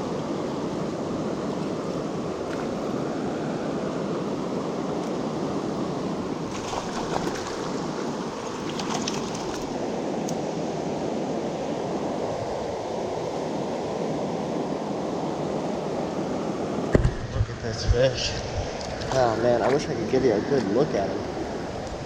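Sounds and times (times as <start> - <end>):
fast-flowing river rushing: 0.0 - 16.8.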